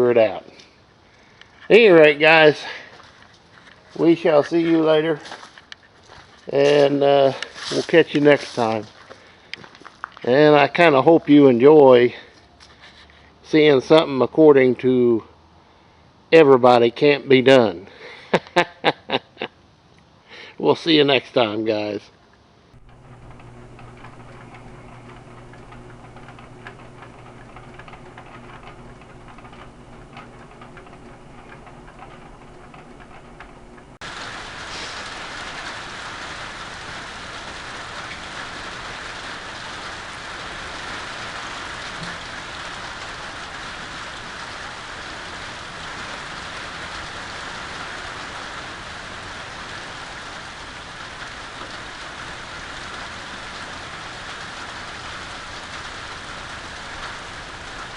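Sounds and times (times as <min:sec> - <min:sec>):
low steady hum: 0:22.7 - 0:35.4
rain falling: 0:22.7 - 0:57.9.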